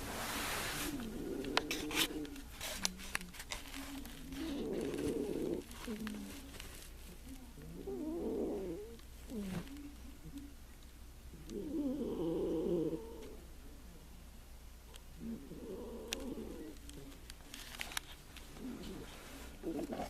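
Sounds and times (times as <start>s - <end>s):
cat snoring: 0.4s - 2.3s, 4.3s - 6.3s, 7.6s - 9.6s, 11.3s - 13.4s, 15.2s - 16.8s, 18.6s - 20.0s.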